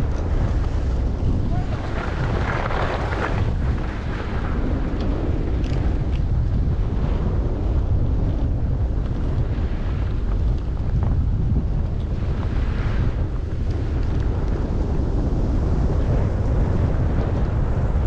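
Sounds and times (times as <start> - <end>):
wind rushing over microphone: 0.0 - 18.0
skis sliding on snow: 0.3 - 4.9.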